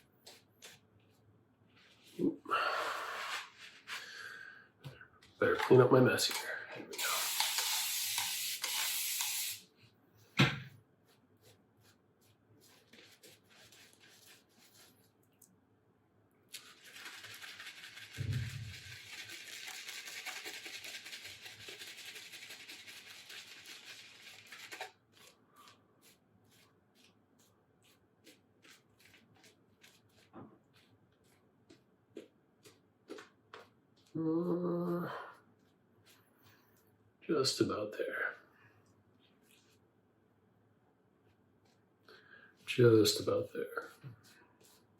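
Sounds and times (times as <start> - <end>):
shaving brush lathering soap: 0.2 - 1.1, 5.5 - 9.5, 11.1 - 15.5, 16.5 - 34.2, 35.3 - 36.9, 39.2 - 39.8, 41.2 - 44.9.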